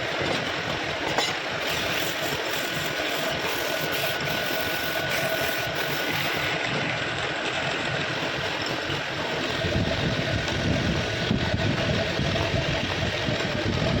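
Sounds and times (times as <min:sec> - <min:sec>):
power tool motor running: 0:01.2 - 0:06.6.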